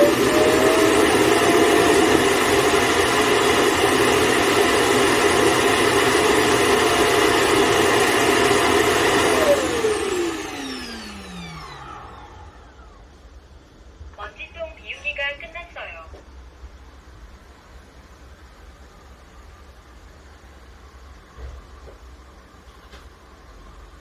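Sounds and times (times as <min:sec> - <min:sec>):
motor spinning down: 0:00.0 - 0:13.2
vacuum suction motor running: 0:00.0 - 0:13.6.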